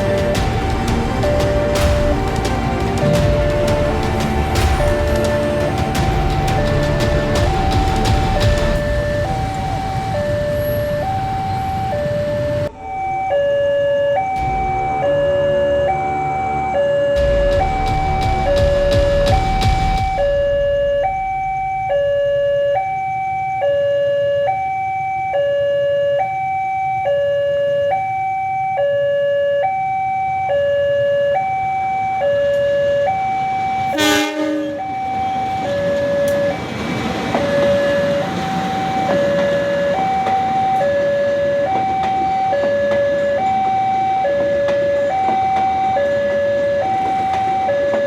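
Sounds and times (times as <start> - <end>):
train rushing by: 0.0 - 23.7, 32.1 - 48.0
two-tone warning alarm: 0.0 - 48.0
loud burst: 17.2 - 23.4.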